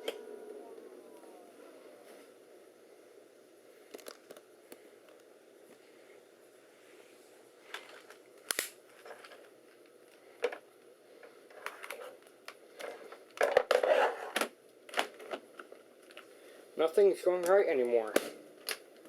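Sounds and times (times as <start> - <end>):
handling clicks and scrapes: 11.2 - 16.3.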